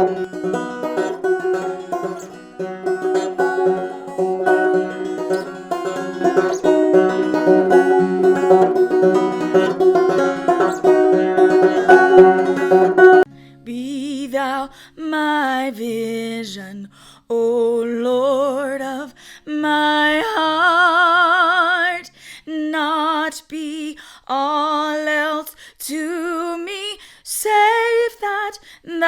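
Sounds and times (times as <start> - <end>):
banjo picking: 0.0 - 13.4
woman singing a hymn: 13.6 - 29.0.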